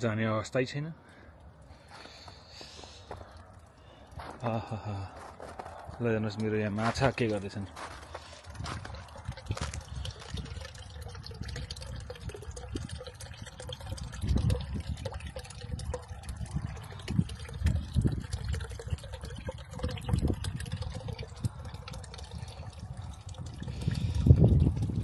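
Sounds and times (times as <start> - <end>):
water trickling: 1.1 - 25.0
wind buffeting microphone: 5.2 - 25.0.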